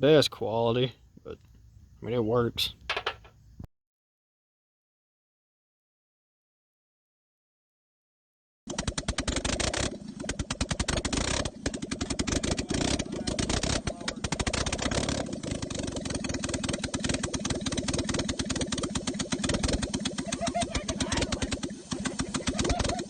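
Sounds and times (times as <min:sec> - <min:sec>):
car engine running: 0:09.2 - 0:23.0.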